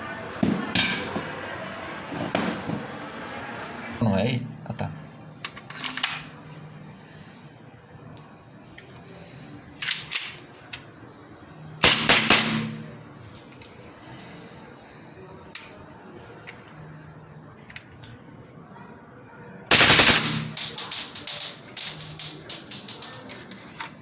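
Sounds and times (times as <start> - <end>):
airsoft pistol shots: 11.8 - 12.9, 19.7 - 22.4.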